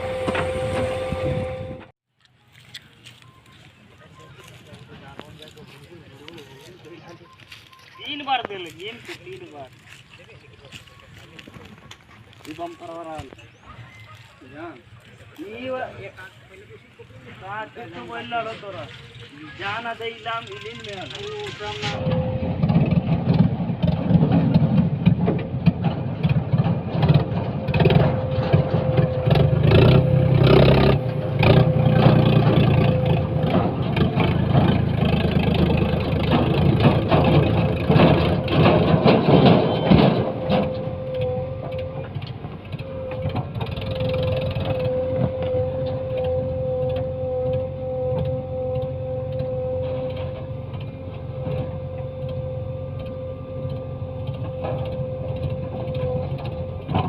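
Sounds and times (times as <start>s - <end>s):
heavy diesel machinery: 0.0s - 2.0s, 14.4s - 57.0s
clatters and knocks: 22.2s - 46.2s.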